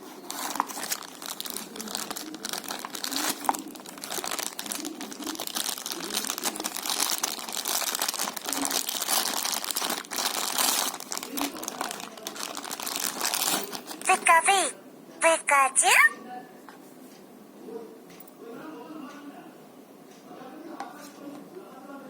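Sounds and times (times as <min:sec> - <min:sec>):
packaging crinkling and rustling: 0:00.0 - 0:14.0.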